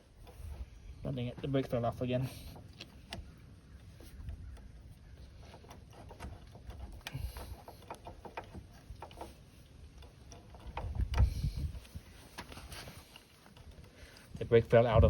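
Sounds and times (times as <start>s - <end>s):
metal parts clicking and clunking: 1.4s - 14.8s.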